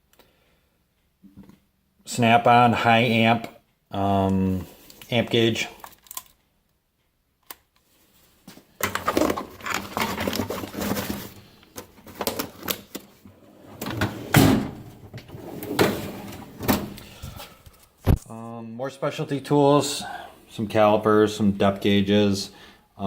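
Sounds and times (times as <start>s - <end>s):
metal tools clattering in drawer: 8.8s - 11.3s.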